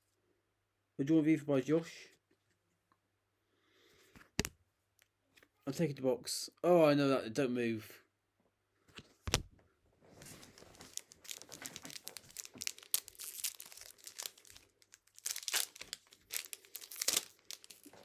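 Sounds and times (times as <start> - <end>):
foil wrapper crinkling: 10.2 - 18.0.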